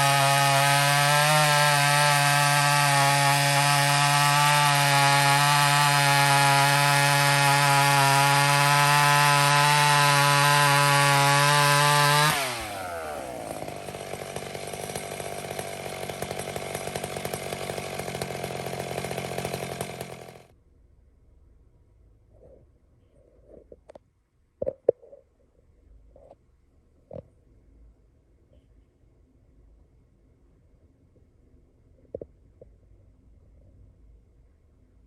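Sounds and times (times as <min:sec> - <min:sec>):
chainsaw cutting: 0:00.0 - 0:20.5.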